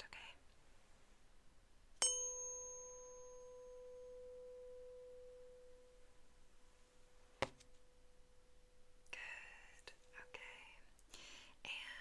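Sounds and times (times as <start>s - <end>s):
tuning fork ringing: 2.0s - 6.5s, 7.7s - 9.0s.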